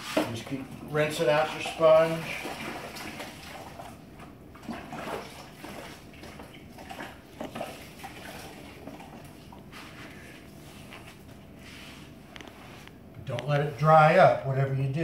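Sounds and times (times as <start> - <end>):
water splashing and dripping: 0.4 - 9.7.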